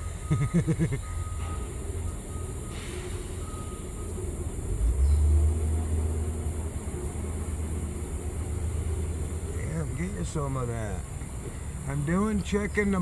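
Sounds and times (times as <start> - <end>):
high reversing beep: 0.0 - 4.2
low engine rumble: 0.0 - 13.0.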